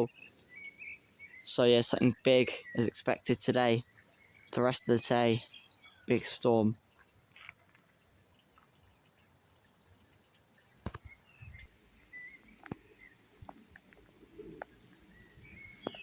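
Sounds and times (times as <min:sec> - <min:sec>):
faint bird chirps: 0:11.0 - 0:13.4, 0:14.0 - 0:16.0.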